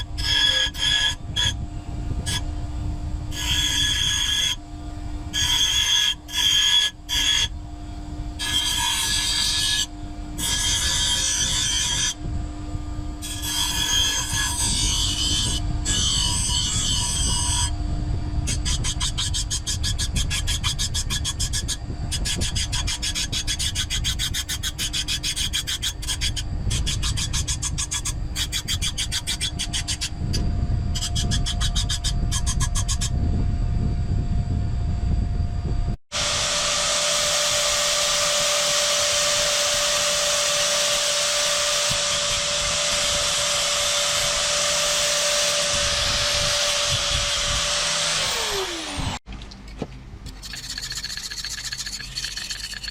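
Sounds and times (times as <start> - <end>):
power tool whining: 36.1 - 49.3
hand file rasping on metal: 50.3 - 52.9.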